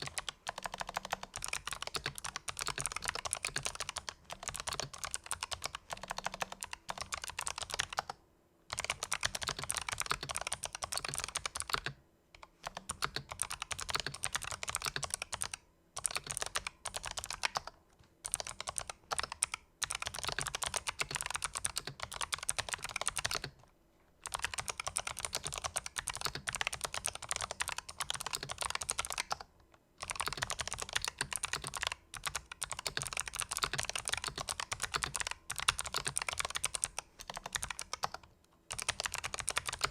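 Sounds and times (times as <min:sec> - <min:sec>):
fast typing on clicky keyboard: 0:00.0 - 0:23.6, 0:24.2 - 0:39.9.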